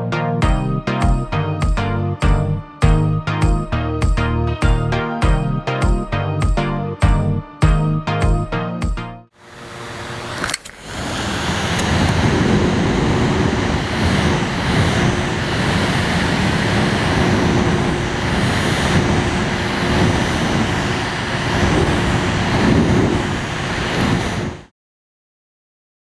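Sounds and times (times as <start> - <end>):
small fan humming: 9.4 - 24.6.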